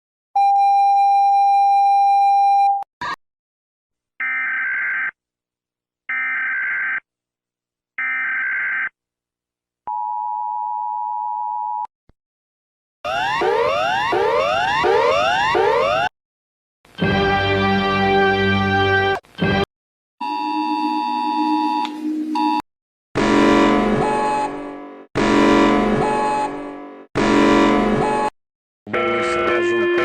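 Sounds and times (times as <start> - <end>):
alarm with rising sweeps: 13.1 - 16.1
two-tone attention signal: 20.2 - 22.6.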